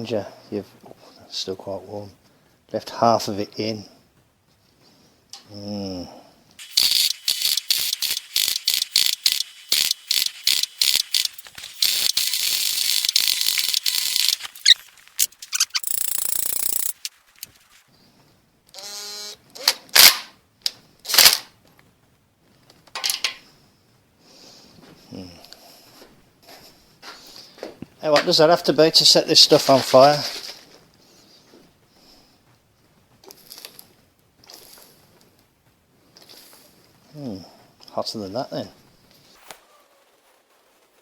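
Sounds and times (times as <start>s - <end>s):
hiss: 6.6s - 14.8s
metallic ratchet clicking: 6.6s - 17.5s.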